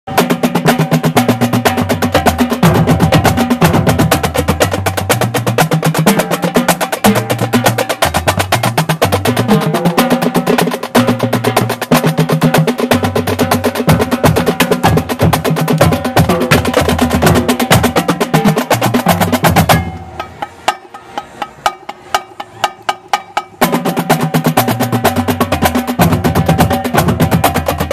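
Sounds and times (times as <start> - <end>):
snare and tenor drums: 0.1 - 27.9.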